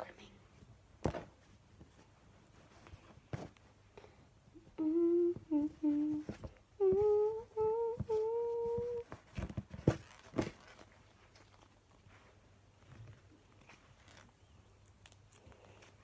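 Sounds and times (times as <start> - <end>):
person humming a tune: 4.6 - 9.2.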